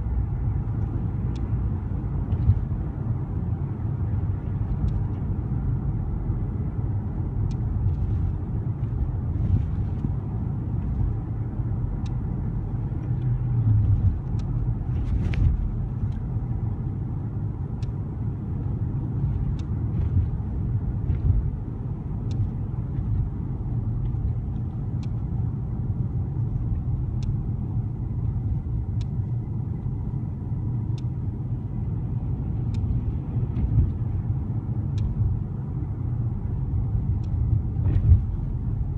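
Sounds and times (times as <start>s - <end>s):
car engine and road rumble: 0.0s - 38.9s
faint small ticks: 22.2s - 23.2s, 27.2s - 27.4s.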